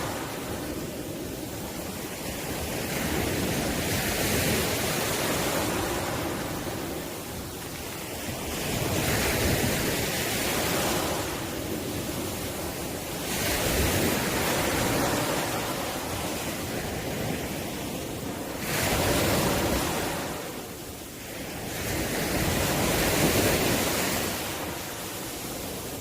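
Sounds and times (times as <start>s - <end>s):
ocean waves breaking: 0.0s - 26.0s.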